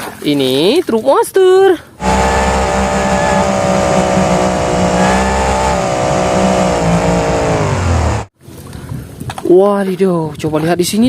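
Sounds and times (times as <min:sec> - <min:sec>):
vehicle engine running loudly: 0:02.0 - 0:08.3.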